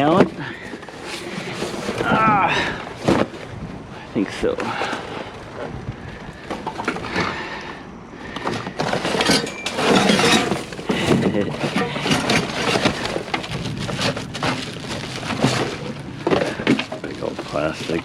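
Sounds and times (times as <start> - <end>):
scrap clattering in a dumpster: 0.0 - 3.6, 8.3 - 18.0.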